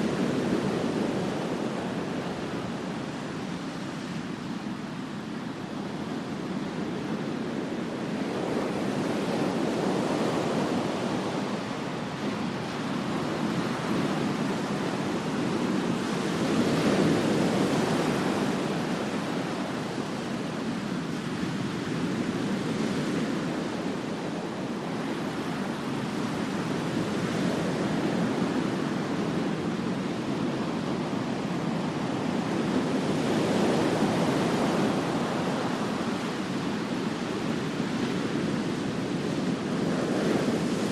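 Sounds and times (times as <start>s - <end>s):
ocean waves breaking on beach: 0.0s - 40.9s.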